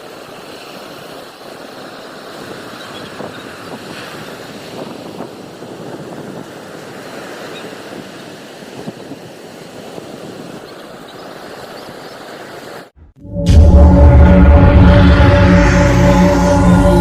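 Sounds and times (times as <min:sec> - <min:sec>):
sea waves rushing: 0:00.0 - 0:12.9
wind: 0:00.0 - 0:13.1.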